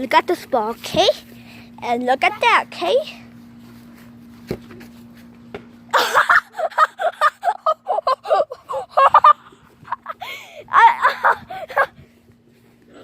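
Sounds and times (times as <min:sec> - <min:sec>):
child laughing or shrieking: 0:05.9 - 0:12.0.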